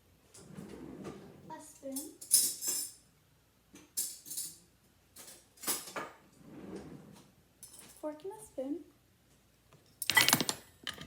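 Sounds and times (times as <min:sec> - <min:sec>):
metal cutlery clinking: 0:04.0 - 0:04.6, 0:10.0 - 0:11.0.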